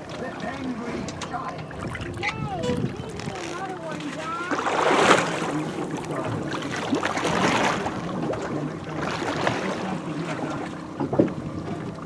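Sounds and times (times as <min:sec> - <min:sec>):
water splashing against boat hull: 0:00.0 - 0:12.0
wind: 0:00.0 - 0:12.0.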